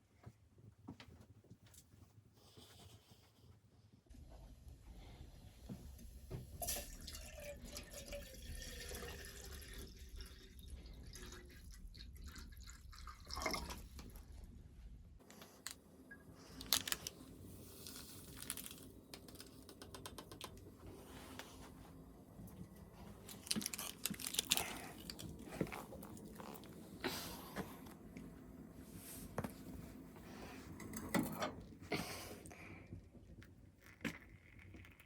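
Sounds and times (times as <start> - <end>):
rustling and crinkling: 16.4 - 19.7, 20.4 - 28.0.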